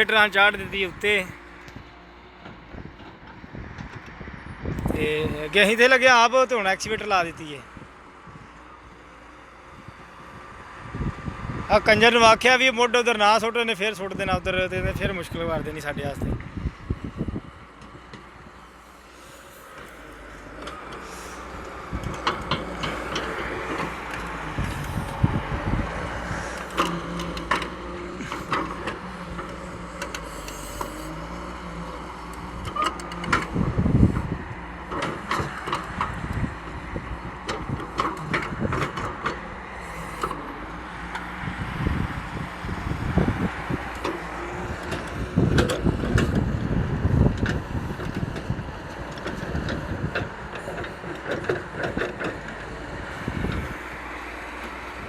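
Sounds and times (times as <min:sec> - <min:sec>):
diesel engine running: 0:00.0 - 0:04.0, 0:04.6 - 0:55.0
low rumbles: 0:18.4 - 0:34.8.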